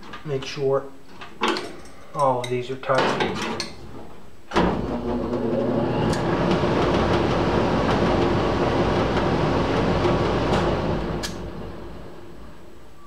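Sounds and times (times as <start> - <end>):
blower rushing air: 4.8 - 12.8.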